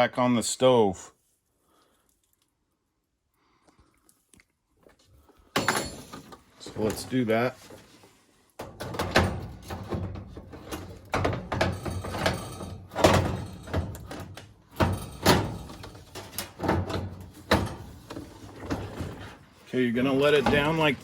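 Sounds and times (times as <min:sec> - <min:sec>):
metal knocks and clunks: 0:08.6 - 0:19.4, 0:20.2 - 0:21.0.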